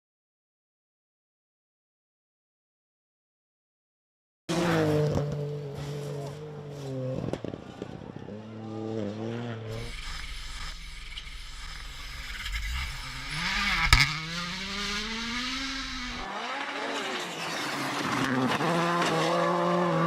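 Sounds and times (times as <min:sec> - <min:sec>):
rally car engine passing: 0:04.5 - 0:20.0
sharp crack: 0:09.7 - 0:16.3.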